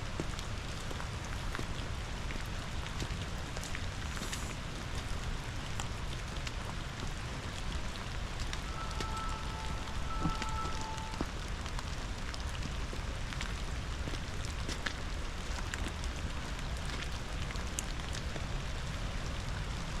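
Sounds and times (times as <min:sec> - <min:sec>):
raindrops ticking: 0:00.0 - 0:19.8
steady rain: 0:00.0 - 0:20.0
faint two-pitch tone: 0:08.6 - 0:11.4.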